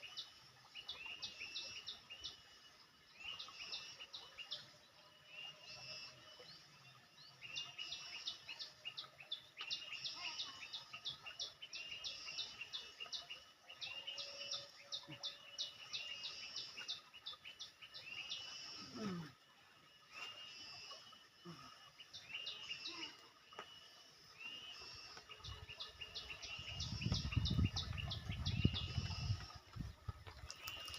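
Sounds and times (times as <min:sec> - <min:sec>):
faint outdoor background: 0:00.0 - 0:30.9
small birds chirping: 0:24.5 - 0:30.9.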